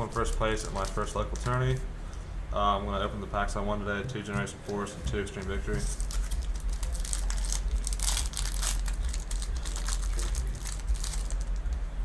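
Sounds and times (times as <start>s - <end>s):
foil wrapper crinkling and tearing: 0.0s - 1.8s, 5.8s - 11.8s.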